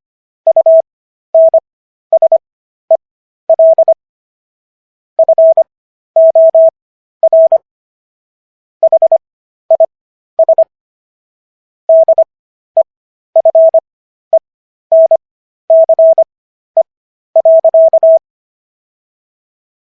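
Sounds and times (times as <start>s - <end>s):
morse code tone: 1.4s - 1.6s, 3.5s - 4.0s, 5.2s - 5.6s, 6.2s - 7.6s, 11.9s - 12.3s, 13.4s - 13.8s, 14.9s - 18.2s.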